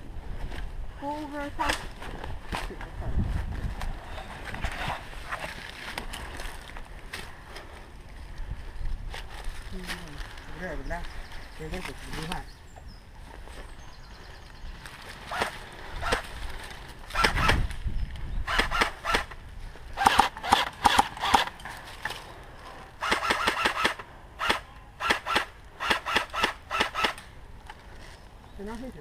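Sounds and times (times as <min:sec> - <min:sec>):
airsoft guns firing: 0:18.5 - 0:19.3, 0:20.0 - 0:21.6, 0:23.0 - 0:27.3.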